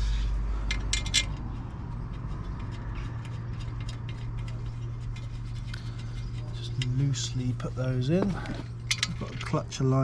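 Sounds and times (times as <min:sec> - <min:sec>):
metal bolts clicking and tapping: 0:00.7 - 0:01.5, 0:08.8 - 0:09.5.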